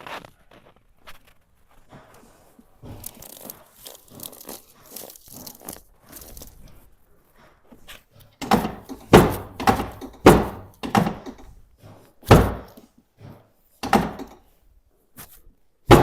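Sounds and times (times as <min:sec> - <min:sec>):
heavy thunks of treatment table: 0:08.4 - 0:11.5, 0:12.3 - 0:12.8, 0:13.8 - 0:14.4.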